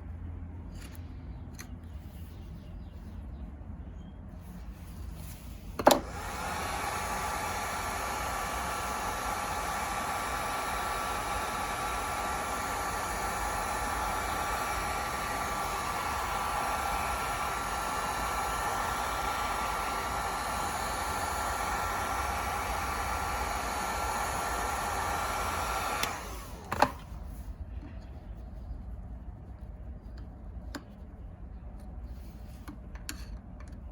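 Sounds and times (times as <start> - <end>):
heat gun fan running: 4.9 - 28.2.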